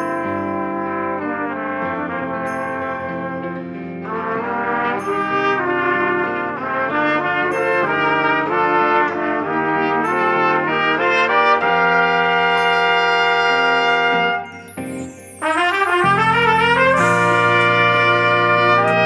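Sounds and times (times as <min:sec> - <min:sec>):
trumpets playing in harmony: 0:00.0 - 0:19.0
backing track: 0:04.1 - 0:19.0.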